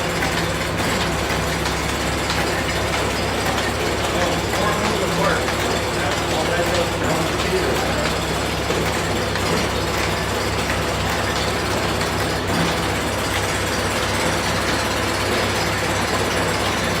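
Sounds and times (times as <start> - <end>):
planer machine humming and whirring: 0.0 - 17.0.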